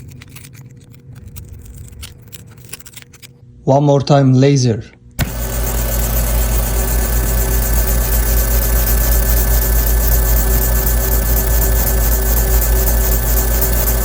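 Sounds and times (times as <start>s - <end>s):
held tones: 5.2s - 14.0s
laser machine humming: 5.2s - 14.0s
pulsing high hiss: 5.2s - 14.0s.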